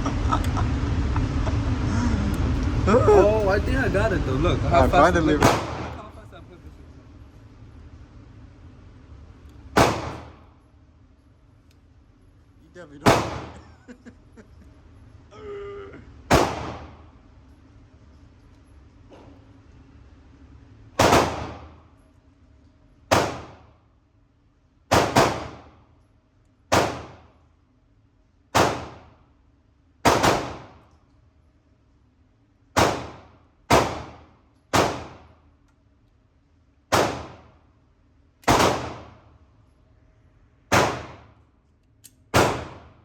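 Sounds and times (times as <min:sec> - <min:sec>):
gunshots with echo: 0:05.4 - 0:06.1, 0:09.8 - 0:10.4, 0:13.0 - 0:13.6, 0:16.3 - 0:17.0, 0:21.0 - 0:21.8, 0:23.1 - 0:23.7, 0:24.9 - 0:25.7, 0:26.7 - 0:27.3, 0:28.6 - 0:29.1, 0:30.1 - 0:30.8, 0:32.8 - 0:35.3, 0:36.9 - 0:37.5, 0:38.5 - 0:39.2, 0:40.7 - 0:41.3, 0:42.4 - 0:43.0.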